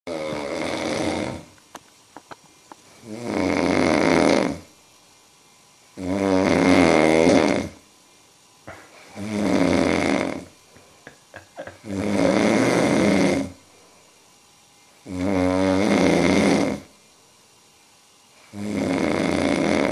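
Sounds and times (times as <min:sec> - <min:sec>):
man snoring loudly: 0:00.1 - 0:01.5, 0:03.0 - 0:04.7, 0:06.0 - 0:07.8, 0:09.2 - 0:10.5, 0:11.5 - 0:13.6, 0:15.0 - 0:16.9, 0:18.5 - 0:19.9.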